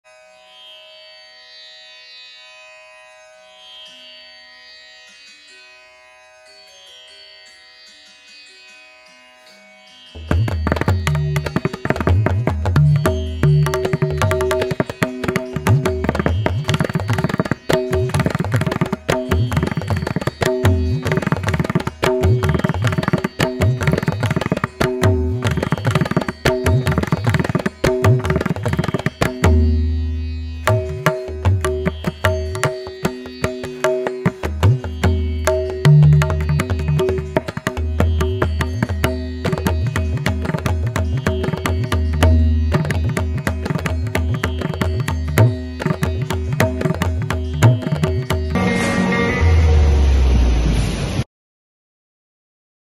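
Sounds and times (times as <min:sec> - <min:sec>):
hand drums: 0:10.2 - 0:48.8
steady drone tones: 0:48.6 - 0:51.2.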